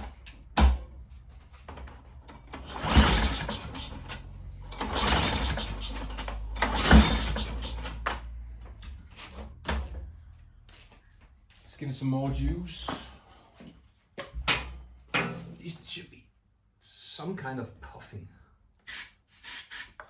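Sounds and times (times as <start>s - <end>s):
engine cranking with rasping whirr: 1.8s - 9.6s
pull-start cord yanked: 2.3s - 8.2s.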